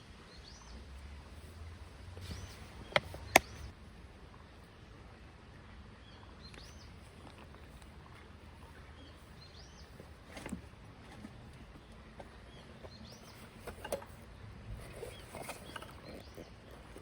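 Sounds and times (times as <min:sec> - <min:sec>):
sharp clicks: 0:02.9 - 0:03.7.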